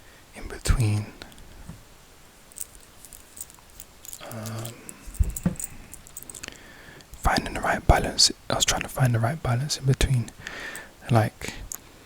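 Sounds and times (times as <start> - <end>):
small clicks and handling noises: 2.5 - 7.2
soft thumps: 5.0 - 6.3.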